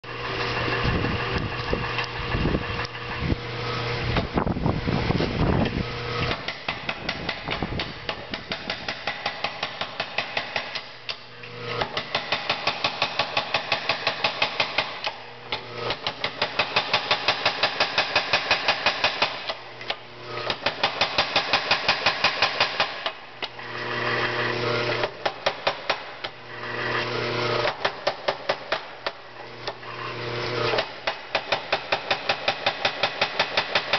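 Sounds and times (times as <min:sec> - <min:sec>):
machine hum: 0:00.0 - 0:22.5, 0:23.1 - 0:33.9
power hammer blows: 0:06.2 - 0:23.2, 0:30.4 - 0:33.9.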